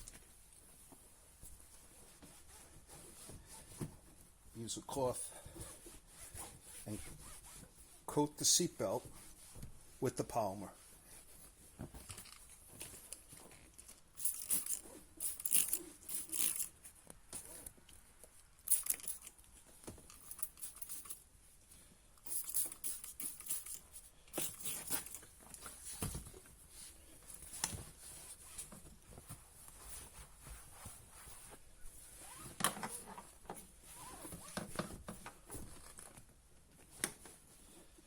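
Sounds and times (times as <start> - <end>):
cloth rustling on seatbelt webbing: 0.1 - 17.8, 23.4 - 38.0.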